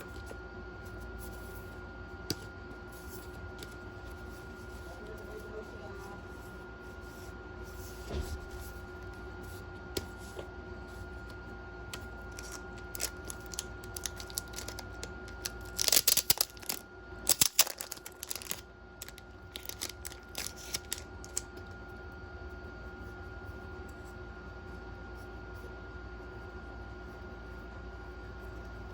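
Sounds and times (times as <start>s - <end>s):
faint steady hum: 0.0s - 28.9s
paper rustling and clicks: 12.0s - 21.4s.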